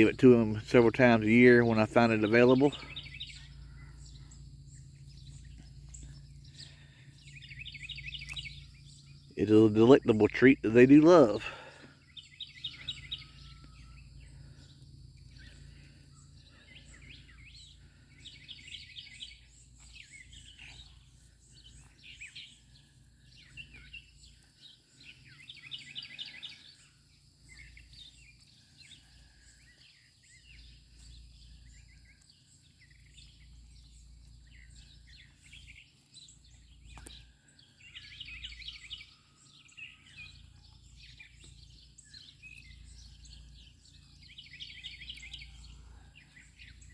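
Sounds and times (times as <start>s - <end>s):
songbird trilling: 0.0s - 46.9s
low background rumble: 2.7s - 9.4s.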